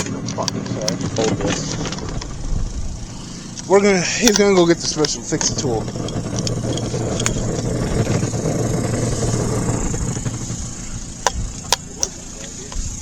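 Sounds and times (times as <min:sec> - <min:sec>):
objects rattling in drum: 0:00.0 - 0:02.5
washing machine rumbling: 0:00.0 - 0:13.0.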